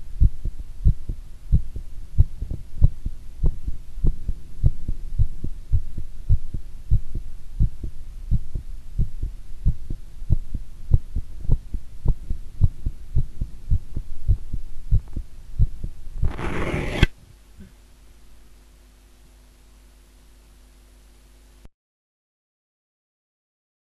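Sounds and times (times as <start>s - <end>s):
faint hum: 0.0s - 21.7s
heartbeat thumping: 0.2s - 16.3s
scratchy burst of noise: 16.2s - 17.2s.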